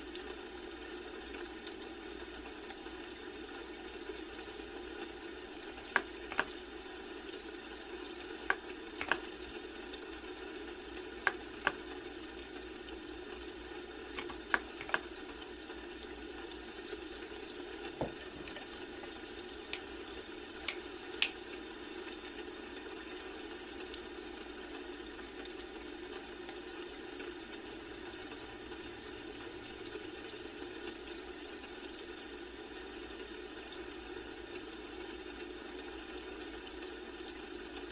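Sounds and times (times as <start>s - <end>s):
keyboard keys clicking: 8.5s - 9.2s.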